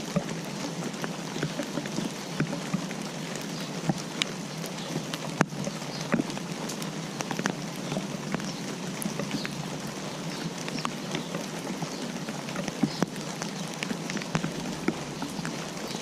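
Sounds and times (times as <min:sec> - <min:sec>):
rain falling: 0:00.0 - 0:16.0
raindrops tapping: 0:00.0 - 0:16.0.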